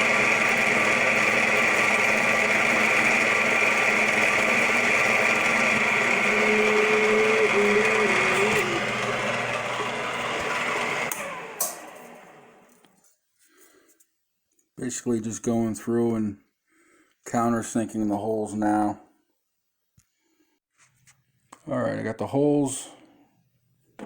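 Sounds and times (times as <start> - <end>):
drill motor running: 0.0 - 12.6
drill cutter squealing: 0.1 - 11.3.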